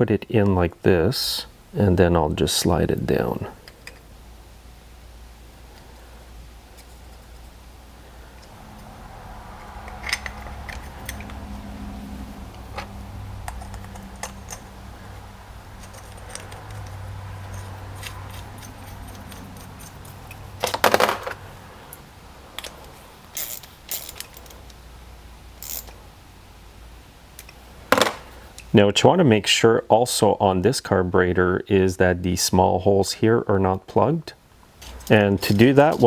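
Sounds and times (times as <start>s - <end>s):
small metal parts clinking: 9.8s - 11.4s, 12.8s - 21.5s, 22.6s - 24.8s, 25.6s - 26.0s
metal parts clattering: 15.8s - 21.4s, 22.6s - 24.7s, 25.6s - 26.0s.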